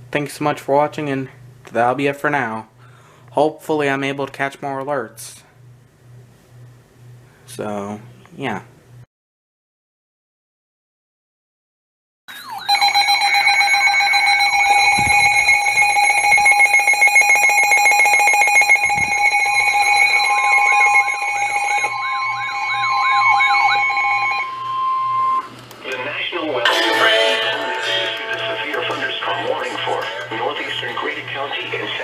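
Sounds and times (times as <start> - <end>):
steady alarm tones: 12.3 - 32.0
warbling sweeping tone: 18.3 - 25.5, 26.6 - 30.9.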